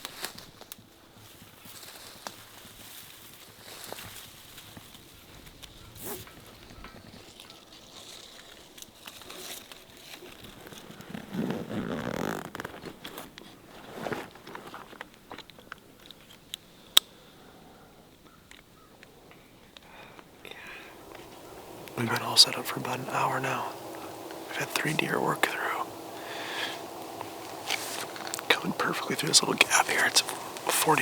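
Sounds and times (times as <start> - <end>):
faint crunching and rustling: 0.0 - 16.6, 19.8 - 31.0
rushing noise: 20.6 - 31.0.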